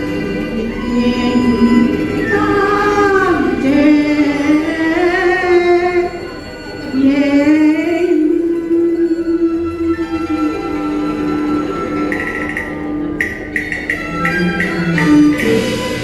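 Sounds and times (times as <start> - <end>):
woman singing opera: 0.0 - 11.6
instrumental accompaniment: 0.0 - 16.0.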